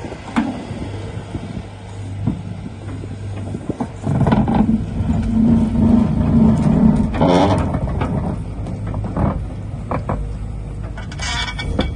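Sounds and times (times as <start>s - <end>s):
excavator diesel engine running: 0.0s - 11.9s
short metallic rattle: 10.9s - 11.9s.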